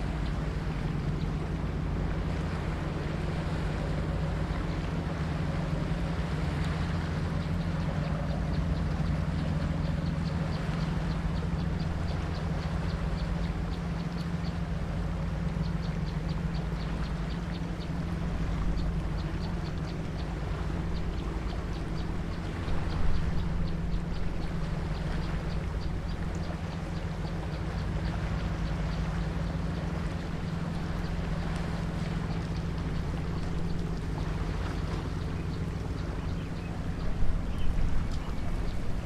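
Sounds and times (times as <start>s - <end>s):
boat engine droning: 0.0s - 39.0s.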